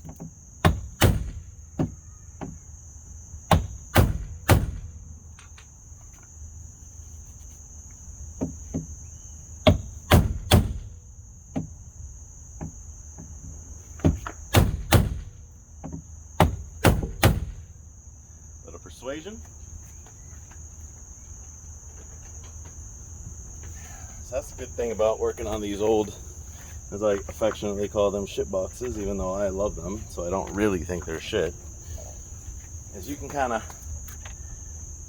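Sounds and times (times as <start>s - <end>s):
insect chirring: 0.0s - 35.0s
hammer striking metal door: 16.4s - 17.6s.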